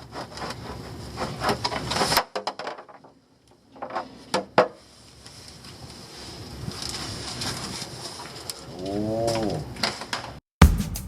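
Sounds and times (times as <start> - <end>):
rustling handling noise: 4.8 - 8.7.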